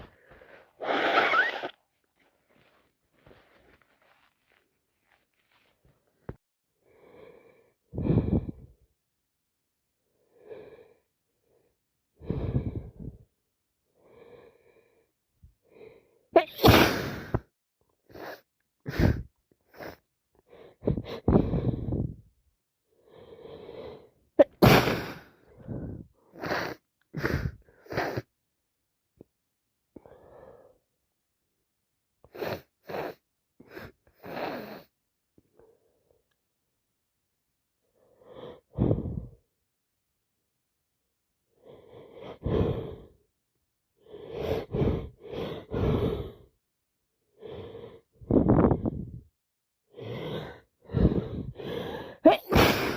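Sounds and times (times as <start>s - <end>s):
woman sneezing: 16.4s - 17.4s, 24.4s - 25.2s, 52.2s - 52.9s.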